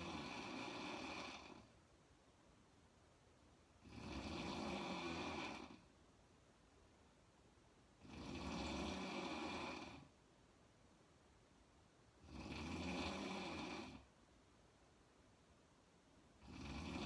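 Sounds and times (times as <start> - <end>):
woman snoring: 0.0 - 1.7, 3.8 - 5.9, 8.0 - 10.1, 12.2 - 14.1, 16.4 - 17.0.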